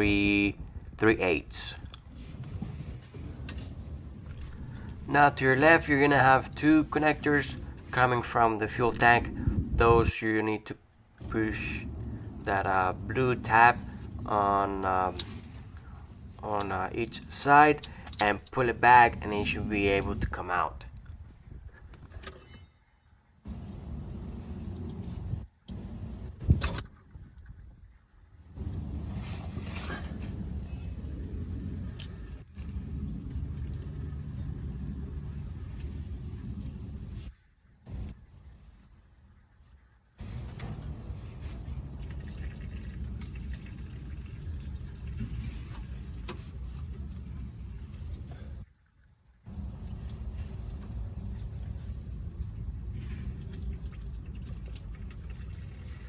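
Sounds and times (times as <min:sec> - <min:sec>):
low rumbling and rubbing: 0:01.9 - 0:10.1, 0:10.9 - 0:16.4, 0:40.2 - 0:42.2
small metallic clinks: 0:22.1 - 0:25.7.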